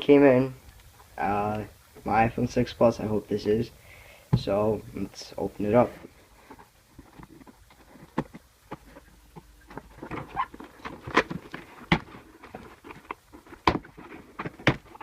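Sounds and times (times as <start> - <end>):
packaging rustling and crinkling: 6.0 - 15.0.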